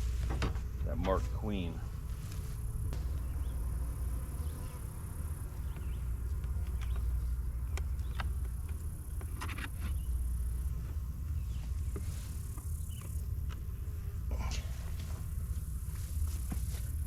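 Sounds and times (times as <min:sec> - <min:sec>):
honeybees buzzing: 0:00.0 - 0:17.0
steady low rumble: 0:00.0 - 0:17.0
hive boxes clicking and knocking: 0:02.9 - 0:13.7.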